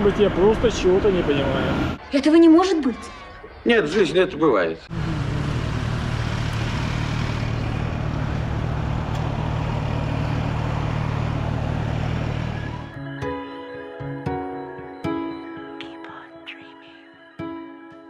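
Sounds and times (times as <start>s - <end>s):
wind and road noise: 0.0s - 2.3s, 4.9s - 12.9s
scooter engine humming: 4.9s - 13.0s.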